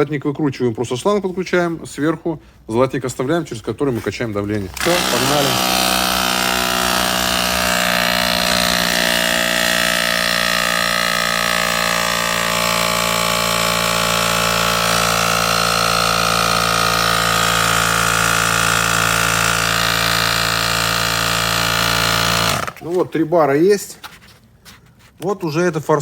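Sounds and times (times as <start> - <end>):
air compressor running: 4.6 - 22.8.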